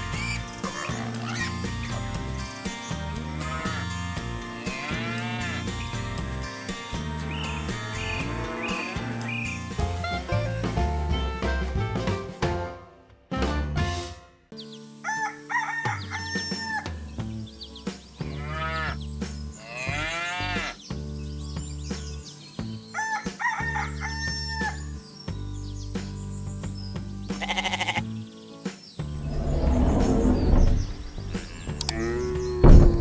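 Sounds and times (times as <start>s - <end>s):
background music with low notes: 0.0s - 33.0s
rooster crowing: 15.0s - 16.9s, 23.0s - 24.8s
rising and falling animal call: 29.1s - 33.0s.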